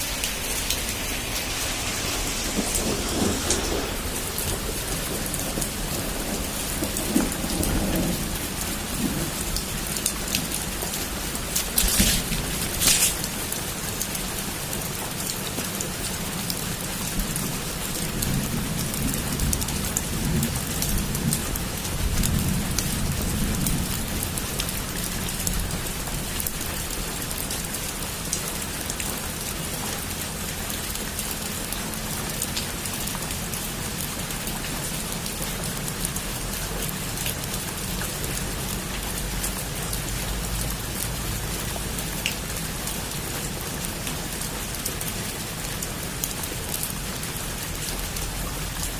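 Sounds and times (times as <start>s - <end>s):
low rumble: 0.0s - 13.5s
heavy rain on a roof: 0.0s - 48.9s.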